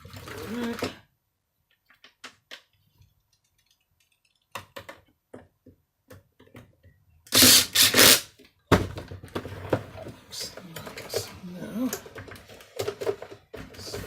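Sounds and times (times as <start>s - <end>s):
plastic parts clicking and knocking: 0.0s - 14.0s
loud plastic clatter: 7.4s - 10.2s, 10.8s - 14.0s.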